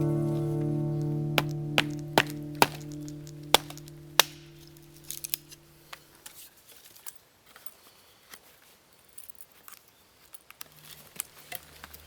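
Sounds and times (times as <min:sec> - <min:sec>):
wooden sticks clicking: 0:01.4 - 0:05.6.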